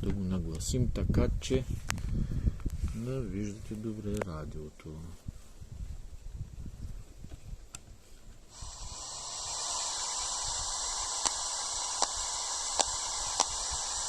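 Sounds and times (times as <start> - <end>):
radio static hiss: 8.5 - 14.0
short sharp clicks: 8.9 - 14.0.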